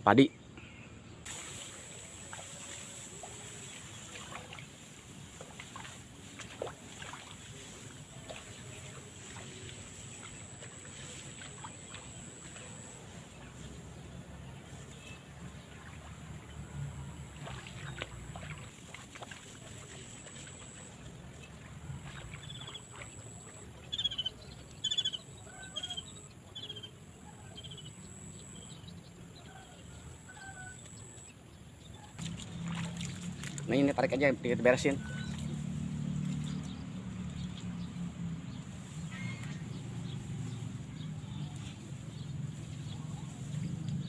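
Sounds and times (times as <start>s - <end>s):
bird chirping: 22.4s - 29.7s, 34.5s - 44.0s.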